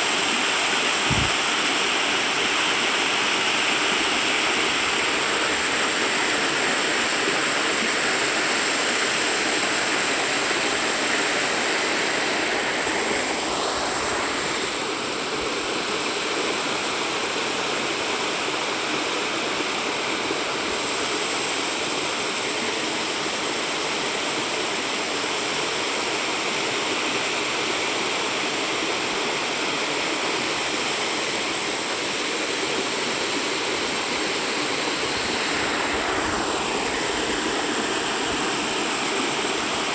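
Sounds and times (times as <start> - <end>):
waterfall rushing: 30.1 - 39.9.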